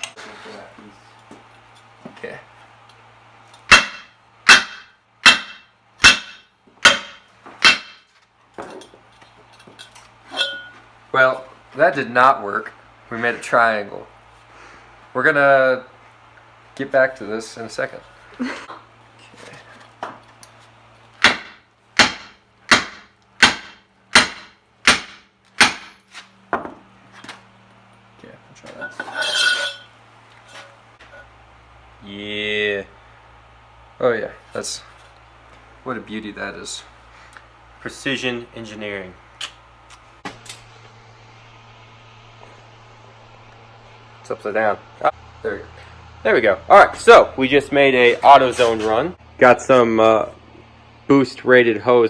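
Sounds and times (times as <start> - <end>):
sledgehammer striking metal tube: 3.7 - 8.1, 10.3 - 10.8, 21.2 - 26.1.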